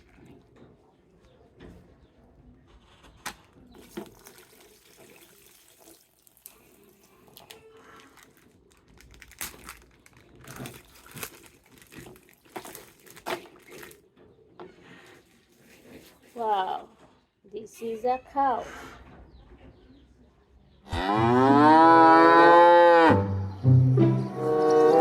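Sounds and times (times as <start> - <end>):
plastic packaging crinkling: 6.2 - 14.1
sharp plastic crackles: 6.3 - 14.3.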